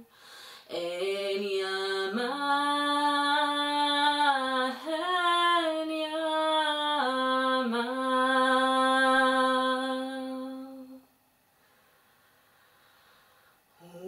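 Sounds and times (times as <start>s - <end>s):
woman singing wordless held tones: 0.6s - 11.1s.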